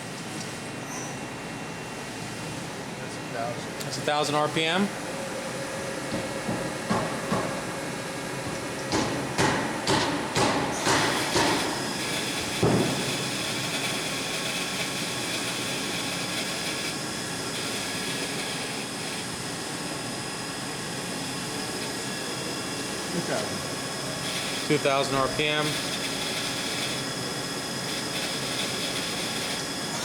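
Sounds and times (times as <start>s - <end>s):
machine hum with whining tones: 0.0s - 30.0s
sharp knocks: 6.1s - 7.6s, 8.9s - 11.7s.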